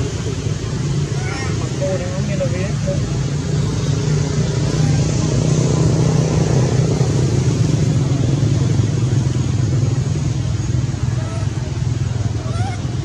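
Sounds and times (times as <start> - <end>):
motor engine running: 0.0 - 13.0.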